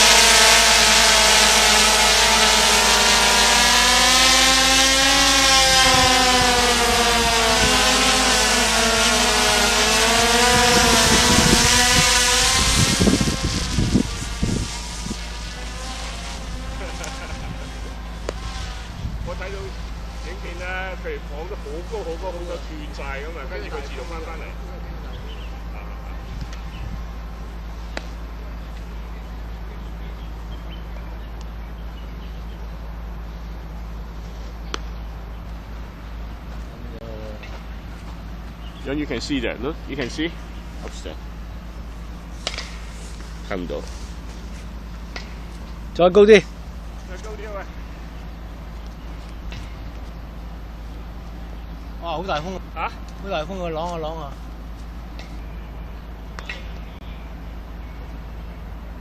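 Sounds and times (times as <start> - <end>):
wind buffeting microphone: 0.0 - 20.9, 26.2 - 27.2
deep rumble: 0.0 - 31.8
drone propellers whining: 0.0 - 59.0.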